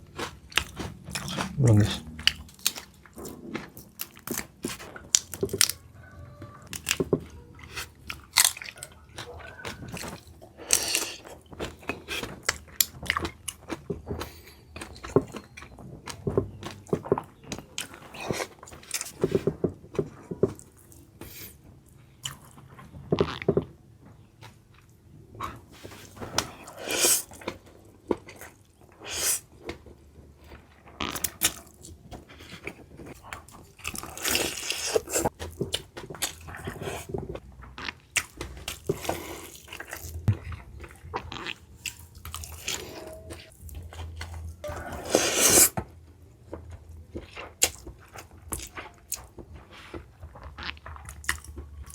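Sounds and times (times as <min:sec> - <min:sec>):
person chewing food: 0:00.0 - 0:51.9.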